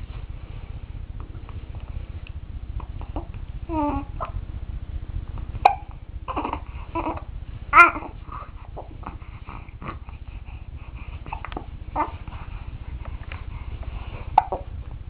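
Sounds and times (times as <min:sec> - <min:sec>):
baby hiccuping: 0:05.6 - 0:06.6
baby vocal sounds: 0:05.6 - 0:10.2.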